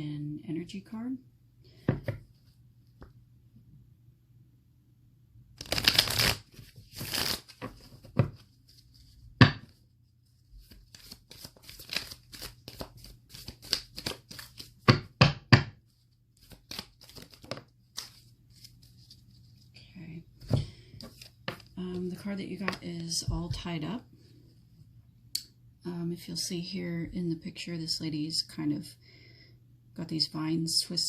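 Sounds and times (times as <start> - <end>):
cards riffle shuffling: 5.6 - 9.8, 10.6 - 14.9, 16.0 - 19.6, 21.0 - 22.0.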